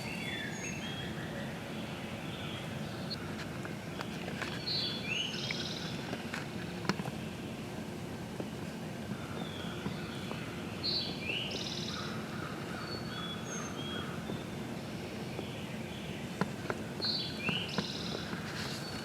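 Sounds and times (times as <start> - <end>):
outdoor background noise: 0.0 - 19.0
songbird singing: 0.0 - 19.0.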